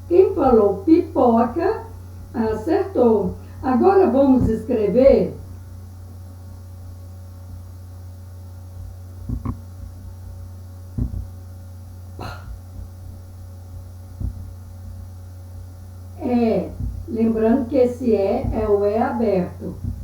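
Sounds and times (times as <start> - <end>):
steady low hum: 0.0 - 20.0
soft thumps or clicks: 4.3 - 5.2, 8.8 - 11.4, 12.2 - 15.0, 16.7 - 17.1, 18.3 - 18.8, 19.7 - 20.0.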